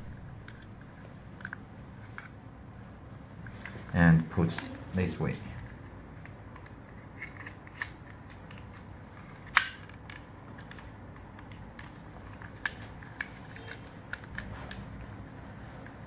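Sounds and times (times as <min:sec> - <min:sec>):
faint low hum: 0:00.0 - 0:16.0
plastic parts clicking into place: 0:01.4 - 0:02.3, 0:05.6 - 0:14.8.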